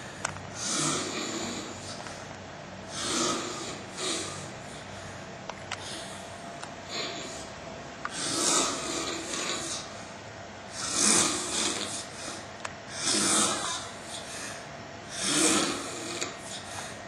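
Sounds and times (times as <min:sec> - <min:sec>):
person snoring: 0:00.0 - 0:02.0, 0:02.9 - 0:04.9, 0:06.8 - 0:07.5, 0:08.1 - 0:10.0, 0:10.7 - 0:16.8.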